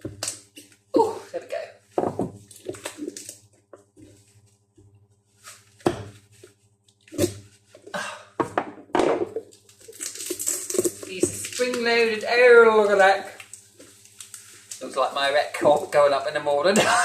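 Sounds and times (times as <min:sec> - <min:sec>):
packaging rustling: 0:09.3 - 0:14.9.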